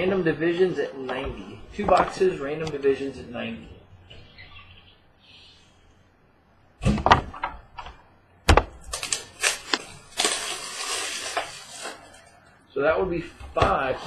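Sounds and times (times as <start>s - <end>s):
rustling scraping hiss: 9.4s - 12.3s.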